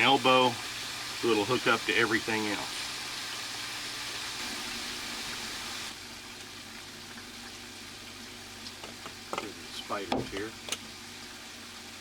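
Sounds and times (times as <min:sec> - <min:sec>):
steady rushing hiss: 0:00.0 - 0:06.2.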